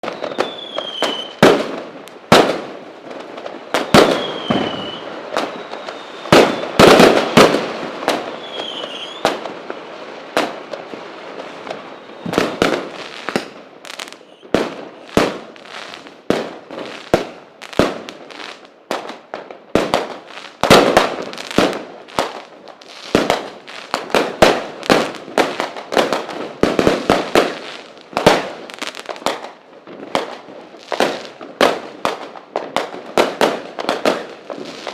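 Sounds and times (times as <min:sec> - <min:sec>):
falling firework whistles: 0:00.0 - 0:01.8, 0:03.6 - 0:09.5, 0:11.4 - 0:16.1
fireworks bangs: 0:00.0 - 0:34.9.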